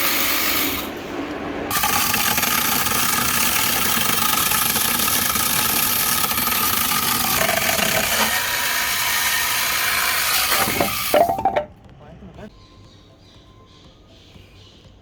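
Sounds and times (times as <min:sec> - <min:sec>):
electric chainsaw cutting wood: 0:01.7 - 0:11.1.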